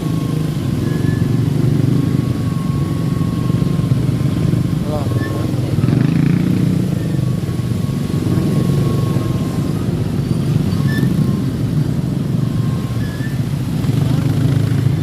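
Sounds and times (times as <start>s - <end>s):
motorcycle and car engines running: 0.0s - 15.0s
rumble of road traffic: 0.0s - 15.0s.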